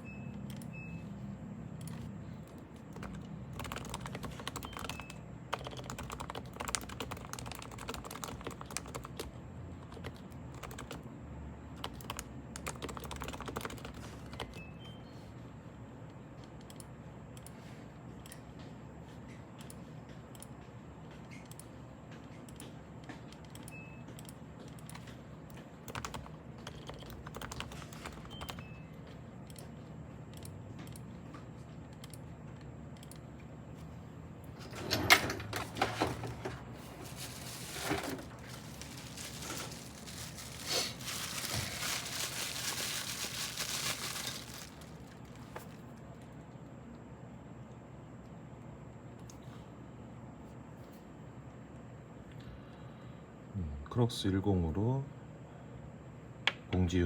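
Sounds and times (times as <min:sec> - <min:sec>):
keyboard typing: 0:01.8 - 0:11.0, 0:11.8 - 0:14.6, 0:25.8 - 0:28.7.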